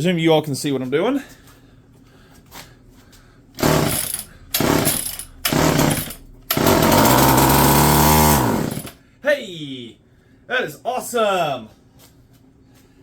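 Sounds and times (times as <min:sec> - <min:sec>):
chainsaw engine starting and running: 0:03.6 - 0:09.0.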